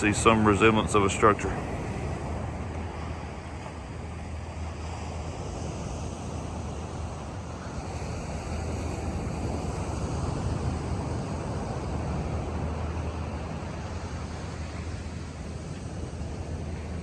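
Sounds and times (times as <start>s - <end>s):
ocean surf: 0.0s - 17.0s
wind rumbling on microphone: 0.0s - 17.0s.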